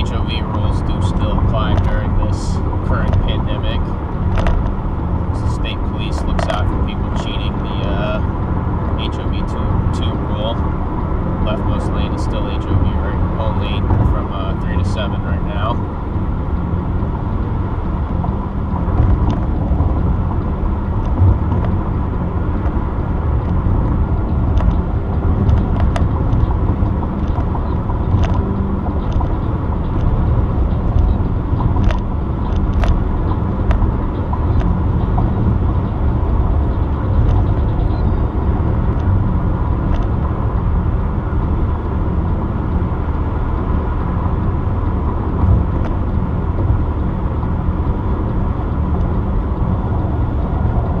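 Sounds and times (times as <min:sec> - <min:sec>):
car road noise from cabin: 0:00.0 - 0:51.0.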